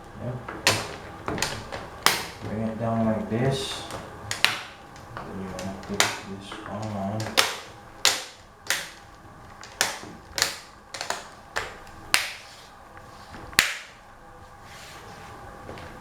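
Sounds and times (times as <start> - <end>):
plastic clips snapping: 0.5 - 2.5, 3.7 - 12.5, 13.4 - 14.0.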